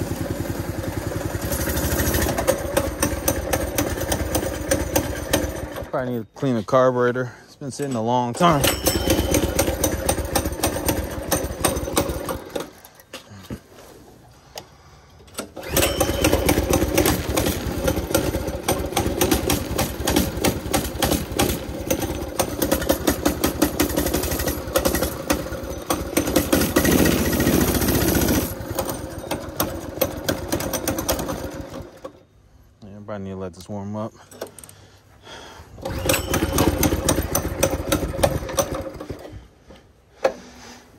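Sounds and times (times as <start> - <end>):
small engine running unsteadily: 0.0 - 5.9, 8.5 - 13.0, 15.5 - 32.2, 35.8 - 39.4.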